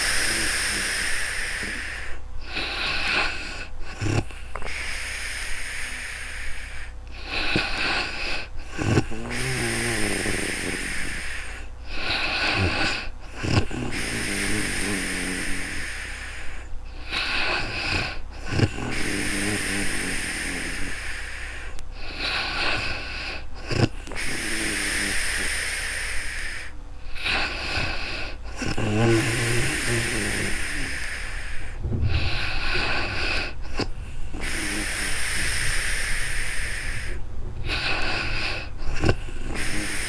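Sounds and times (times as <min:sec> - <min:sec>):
woman snoring: 0:00.0 - 0:16.5, 0:17.1 - 0:21.4, 0:22.0 - 0:40.0
long airy breaths: 0:00.0 - 0:40.0
short sharp snort: 0:22.1 - 0:40.0.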